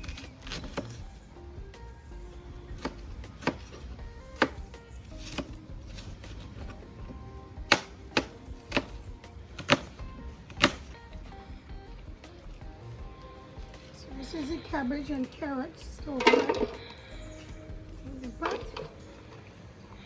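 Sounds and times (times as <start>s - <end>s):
background music: 0.0s - 20.0s
knife chopping on cutting board: 2.8s - 4.6s, 5.2s - 6.6s, 7.7s - 8.9s, 9.6s - 10.9s.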